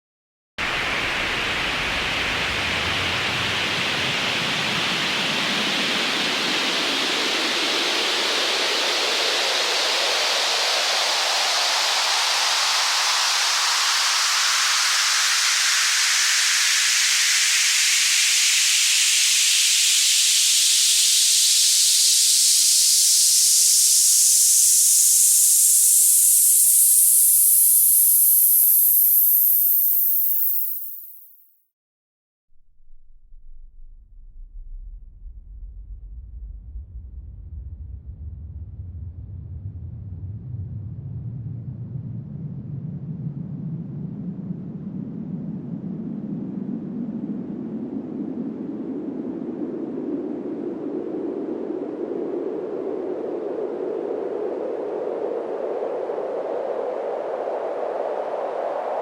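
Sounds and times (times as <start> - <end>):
white noise riser sweeping upward: 0.6 - 31.4.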